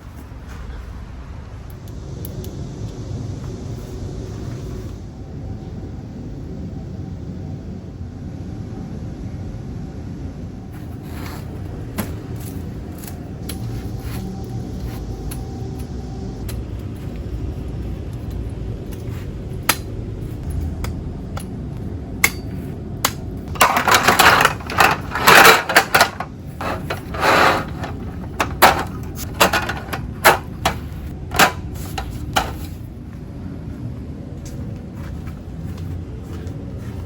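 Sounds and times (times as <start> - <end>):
steady low rumble: 0.0 - 37.0
hard objects clattering and knocking: 23.1 - 32.8.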